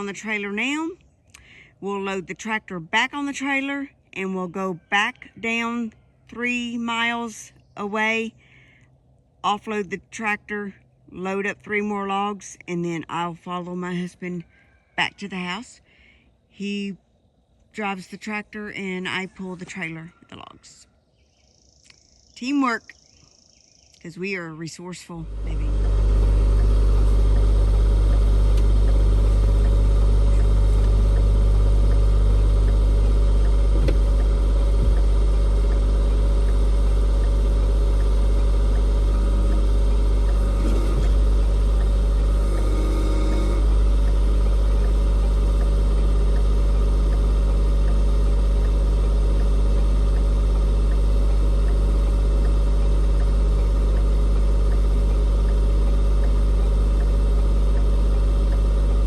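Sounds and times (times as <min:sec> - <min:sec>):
vehicle engine idling: 0:25.0 - 0:59.0.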